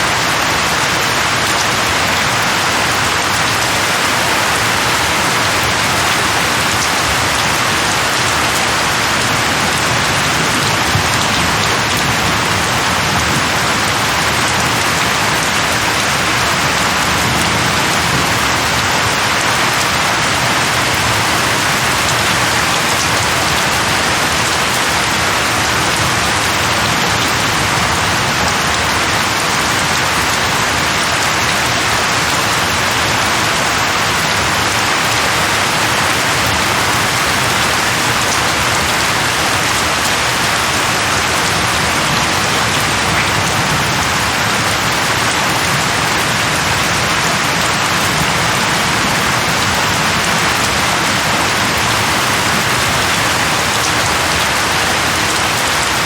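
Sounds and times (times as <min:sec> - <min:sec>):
heavy rain: 0:00.0 - 0:56.0.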